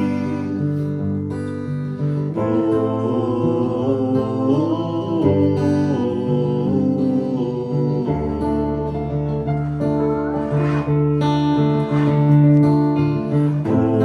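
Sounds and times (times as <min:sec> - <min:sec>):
person singing wordless line: 0:00.0 - 0:01.2, 0:02.0 - 0:09.4, 0:13.3 - 0:14.0
piano accompaniment: 0:00.0 - 0:14.0.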